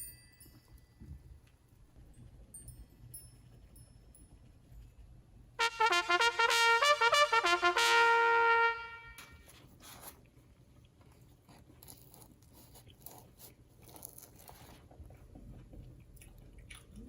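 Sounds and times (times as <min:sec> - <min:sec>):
faint high tinkling tones: 0:00.0 - 0:05.4
brass fanfare: 0:05.6 - 0:09.5.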